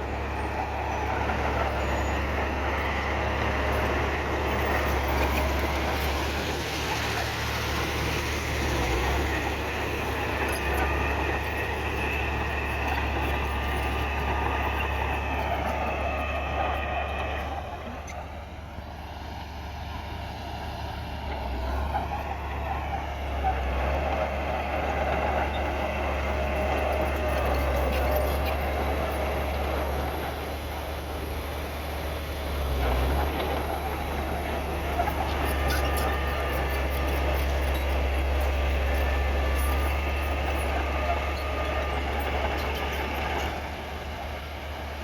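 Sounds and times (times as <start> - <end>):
heavy diesel machinery running: 0.0 - 45.0.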